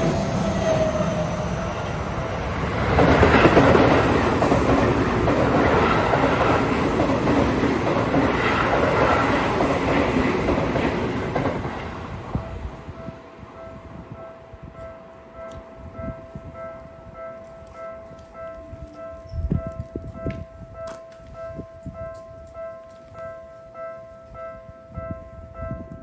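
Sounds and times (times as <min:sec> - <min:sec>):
electric train passing: 0:00.0 - 0:26.0.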